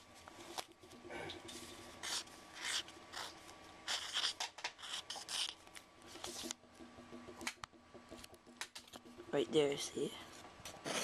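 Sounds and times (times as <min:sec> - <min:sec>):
pencil scratching on paper: 0:02.0 - 0:06.5.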